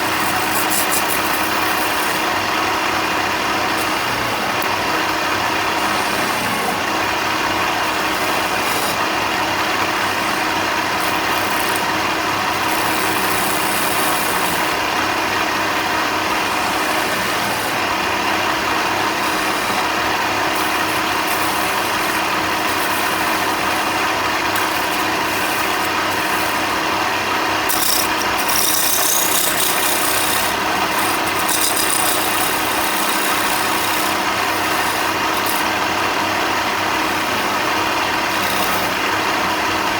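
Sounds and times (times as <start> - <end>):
electric power tool cutting timber: 0.0 - 39.9.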